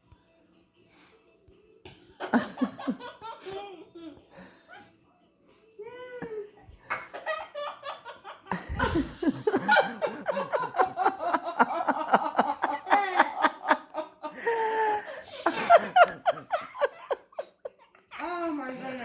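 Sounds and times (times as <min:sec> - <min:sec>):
hearty laughter: 0:02.2 - 0:04.9, 0:06.9 - 0:18.1.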